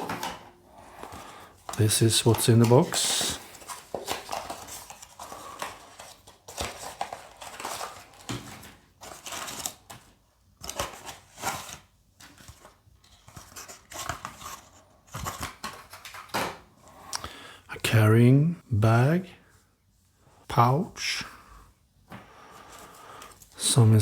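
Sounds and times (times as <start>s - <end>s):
packaging rustling and crinkling: 1.0s - 16.6s.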